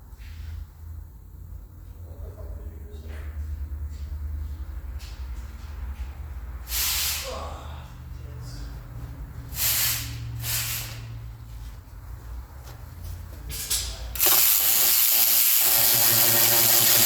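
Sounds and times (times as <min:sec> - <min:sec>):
short bursts of hiss: 0:06.7 - 0:07.3, 0:09.6 - 0:11.0, 0:14.2 - 0:17.0.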